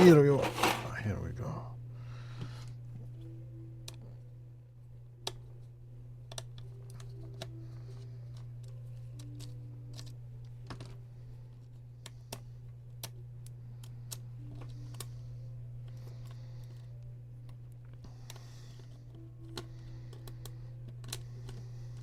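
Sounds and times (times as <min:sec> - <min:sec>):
steady low hum: 0:00.0 - 0:22.0
tweezers clicking on plastic parts: 0:06.2 - 0:10.2.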